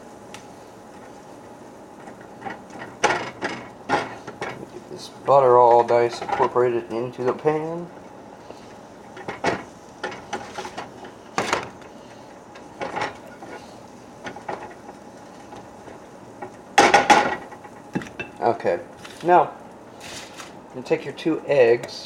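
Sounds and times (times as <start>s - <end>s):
utensil clatter: 1.9s - 7.7s, 8.4s - 19.3s
utensil scraping a skillet: 8.4s - 16.0s, 19.0s - 20.6s.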